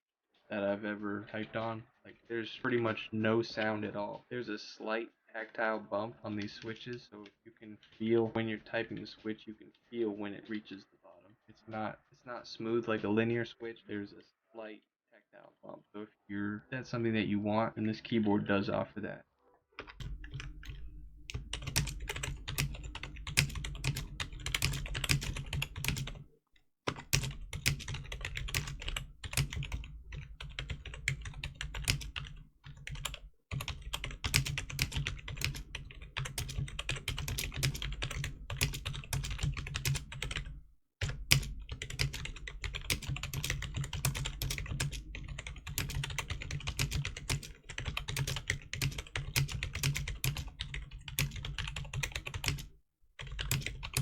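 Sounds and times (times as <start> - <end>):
fast typing on keyboard keys: 20.0 - 26.2, 26.9 - 54.0.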